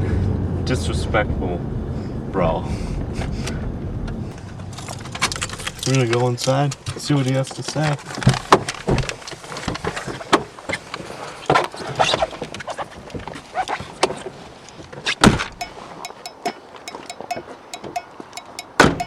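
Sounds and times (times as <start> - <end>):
quick even ticking: 15.6 - 19.0.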